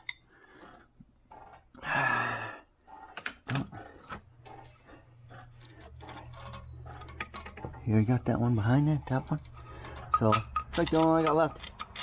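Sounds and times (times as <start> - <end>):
tool scraping: 2.8 - 12.0
sharp clicks and knocks: 5.4 - 12.0.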